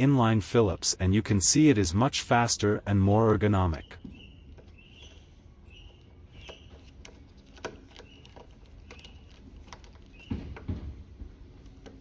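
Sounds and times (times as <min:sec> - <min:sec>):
faint bird chirps: 0:03.7 - 0:10.5
dull knocks: 0:10.2 - 0:12.0.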